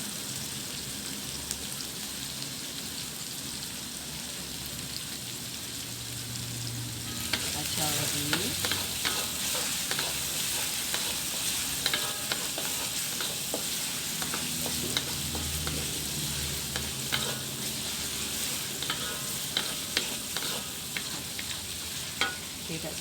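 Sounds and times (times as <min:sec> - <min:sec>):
aromatics sizzling in hot oil: 0:00.0 - 0:23.0
spatula scraping and tapping pan: 0:07.1 - 0:22.6.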